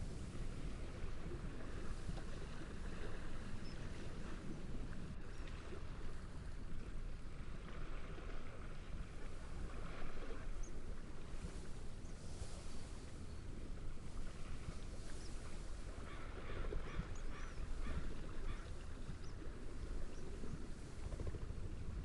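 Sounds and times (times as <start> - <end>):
wind rushing through reeds: 0.0 - 2.6, 9.2 - 22.0
waves washing: 0.0 - 22.0.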